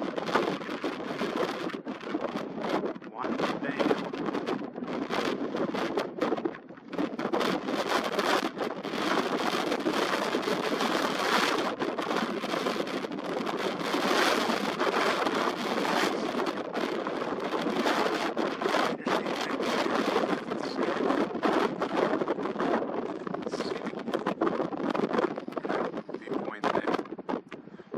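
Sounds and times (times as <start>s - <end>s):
wind buffeting microphone: 0.0s - 27.9s.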